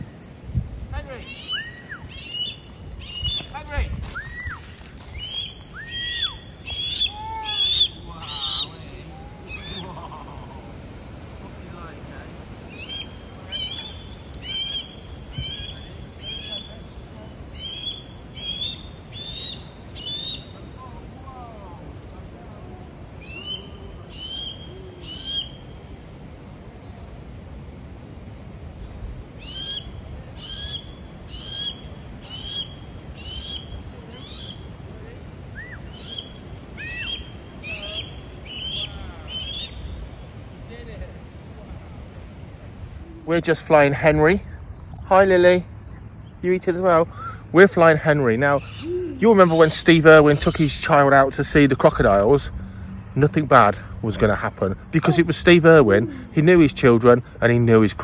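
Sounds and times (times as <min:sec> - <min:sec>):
hawk calling: 0:01.0 - 0:03.6, 0:05.2 - 0:08.8, 0:09.5 - 0:10.6, 0:12.7 - 0:20.6, 0:35.6 - 0:39.8, 0:46.6 - 0:52.4, 0:53.2 - 0:58.0.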